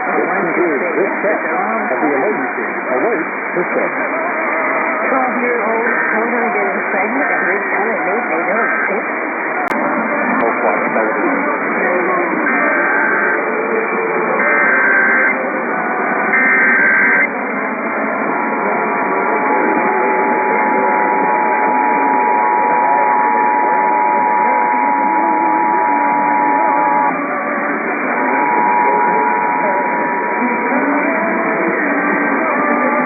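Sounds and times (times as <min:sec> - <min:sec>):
radio channel hiss: 0:00.0 - 0:33.0
harsh digital data warble: 0:00.2 - 0:09.7, 0:10.5 - 0:17.4, 0:18.4 - 0:33.0
two-tone alert signal: 0:12.4 - 0:13.4, 0:14.4 - 0:15.4, 0:16.3 - 0:17.3, 0:19.8 - 0:32.2
single steady tone: 0:27.8 - 0:31.0.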